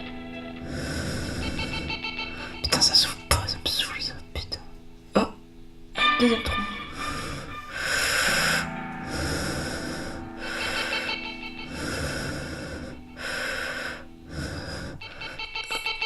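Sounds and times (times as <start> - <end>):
heavy loud breathing: 0.0 - 2.7, 6.8 - 16.0
background music with low notes: 0.0 - 16.0.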